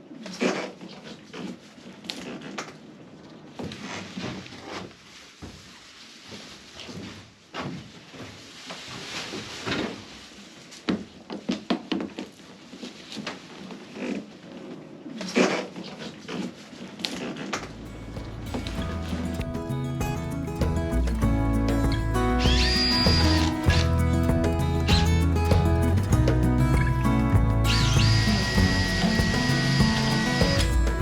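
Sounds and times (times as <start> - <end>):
wooden knocks and clatter: 17.5 - 31.0.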